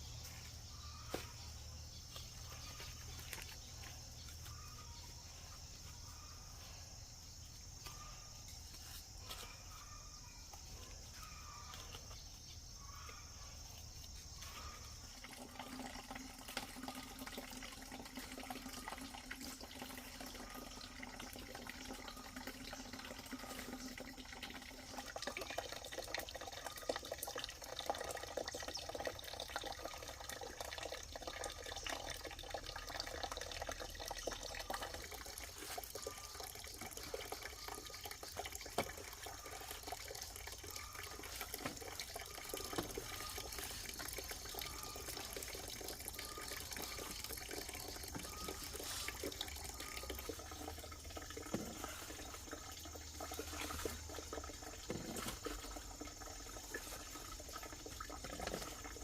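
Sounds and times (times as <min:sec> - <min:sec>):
water running and splashing: 0:14.1 - 0:59.0.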